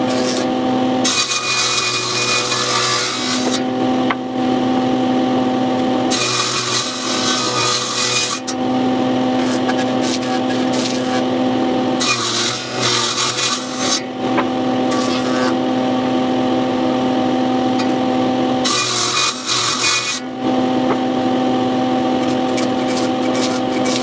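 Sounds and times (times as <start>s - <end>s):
tool cutting into wood: 0.0s - 4.2s, 6.0s - 8.6s, 9.2s - 15.6s, 17.8s - 21.2s, 22.1s - 24.0s
power tool whining: 0.0s - 24.0s.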